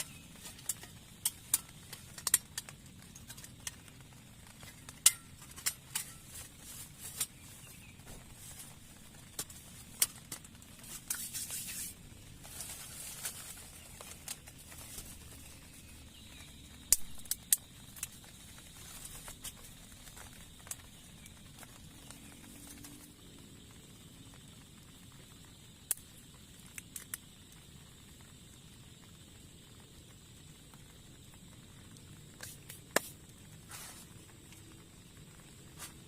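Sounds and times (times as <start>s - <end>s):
rustling: 0.0s - 16.1s, 32.4s - 34.8s.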